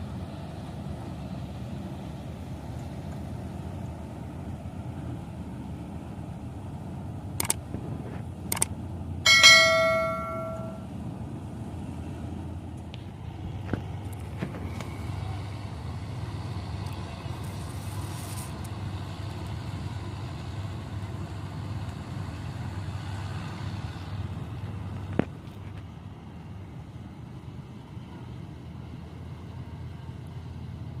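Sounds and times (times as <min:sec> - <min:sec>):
harvester engine humming: 0:00.0 - 0:31.0
sharp click: 0:07.4 - 0:07.6, 0:08.5 - 0:08.7.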